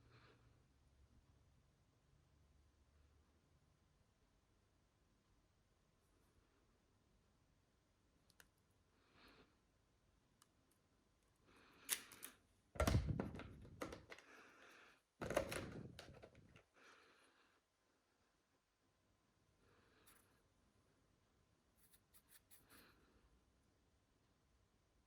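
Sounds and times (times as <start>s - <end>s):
packaging knocks: 12.8s - 14.2s, 15.2s - 16.6s.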